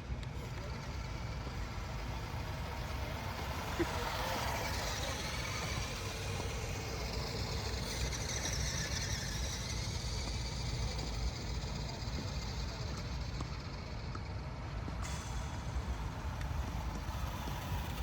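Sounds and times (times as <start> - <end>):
toy truck motor whining: 0.2 - 14.1.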